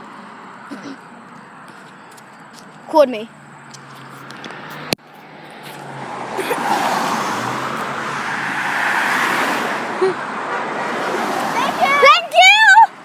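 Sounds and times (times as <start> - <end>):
vehicle driving past: 3.4 - 12.0.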